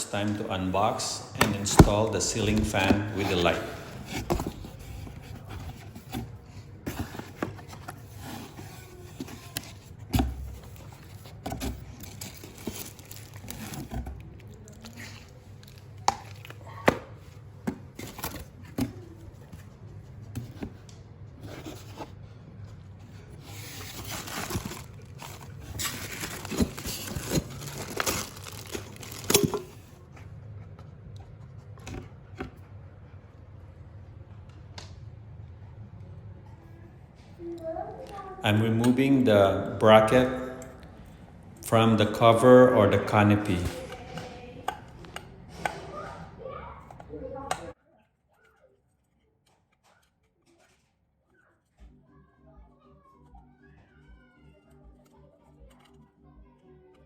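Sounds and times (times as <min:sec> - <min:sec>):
cardboard packaging rustling: 0:00.2 - 0:20.8, 0:21.4 - 0:30.2.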